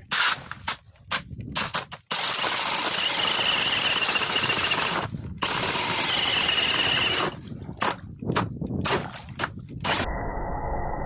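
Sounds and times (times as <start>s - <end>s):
power ice auger drilling: 0.0s - 0.8s, 1.6s - 10.1s
high whine: 9.8s - 11.0s.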